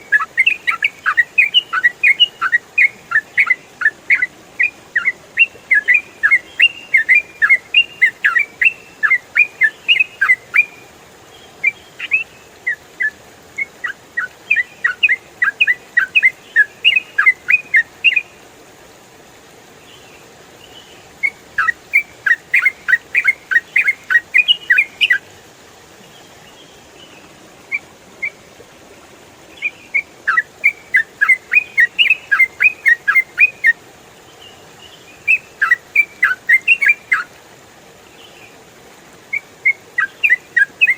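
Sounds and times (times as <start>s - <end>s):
bird singing chattering phrases: 0.0s - 10.8s, 11.6s - 18.3s, 21.2s - 25.2s, 29.5s - 33.7s, 35.2s - 37.3s, 39.3s - 40.9s
faint background hiss: 0.0s - 40.9s.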